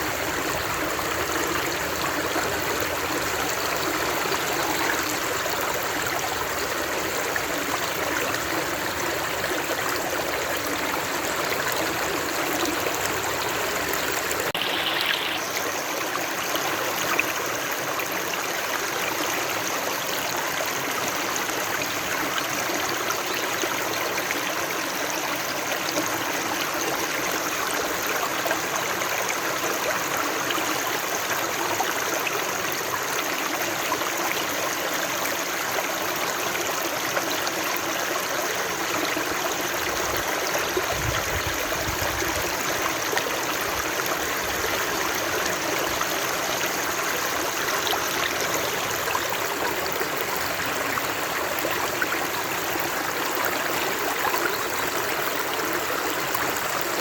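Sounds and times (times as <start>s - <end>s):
running water flowing: 0.0s - 19.8s, 35.3s - 57.0s.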